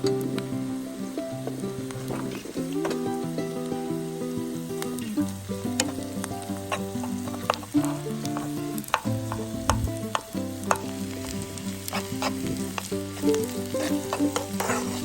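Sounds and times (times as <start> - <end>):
food sizzling in a pan: 0.0 - 15.0
utensil clicking against pan: 4.8 - 15.0.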